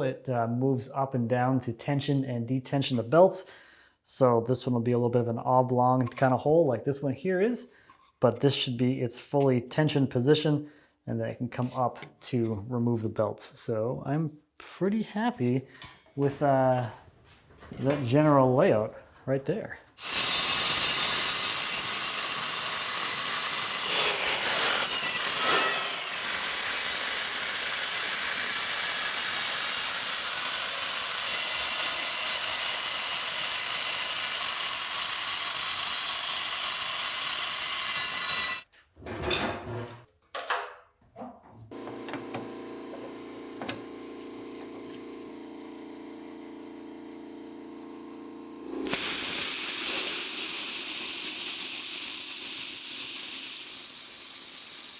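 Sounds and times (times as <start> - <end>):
plasma cutter hissing: 20.0 - 38.6, 48.8 - 54.9.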